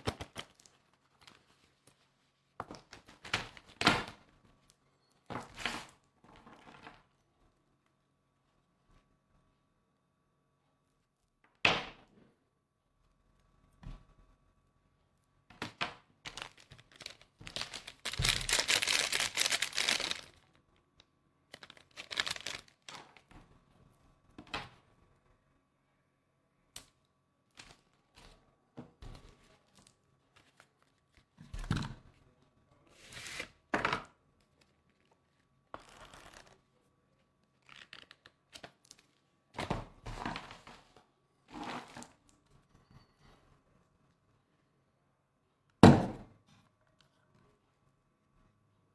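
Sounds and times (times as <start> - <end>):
rustling and crinkling: 16.2 - 20.6, 21.5 - 23.3.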